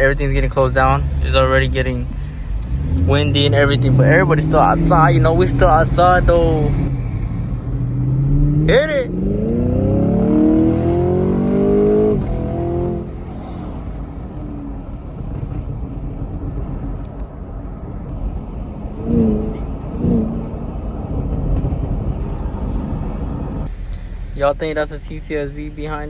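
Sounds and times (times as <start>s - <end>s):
engine blips: 0.0s - 16.6s, 23.2s - 26.0s
car engine accelerating: 0.0s - 26.0s
road and wind noise: 0.0s - 26.0s.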